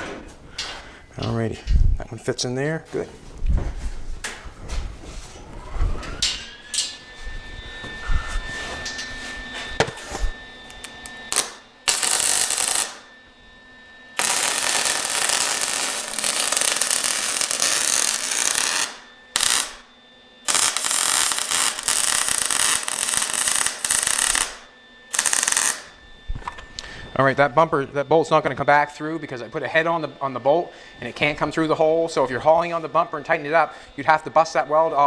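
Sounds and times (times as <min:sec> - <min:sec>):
arc welding crackle: 0:10.7 - 0:13.1, 0:14.2 - 0:26.0.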